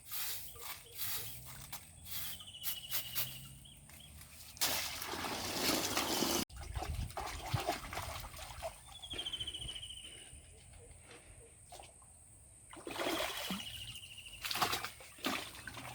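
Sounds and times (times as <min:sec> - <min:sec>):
water splashing and sloshing: 0:04.2 - 0:09.4, 0:11.7 - 0:15.9.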